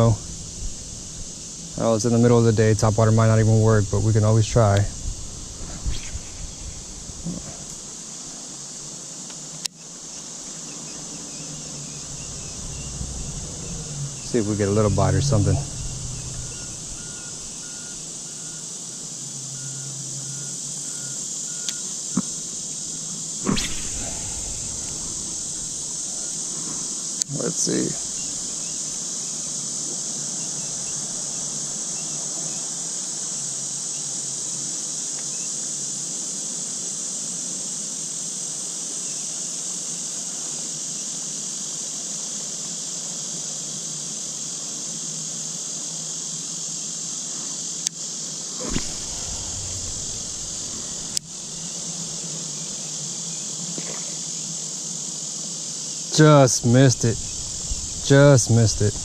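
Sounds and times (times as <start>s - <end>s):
high-pitched insect chorus: 0.0s - 34.2s, 48.6s - 54.4s, 55.0s - 59.0s.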